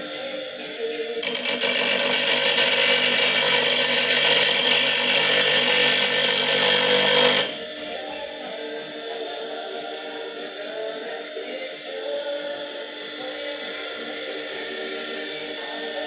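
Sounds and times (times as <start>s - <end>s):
bench grinder running: 1.2s - 7.7s.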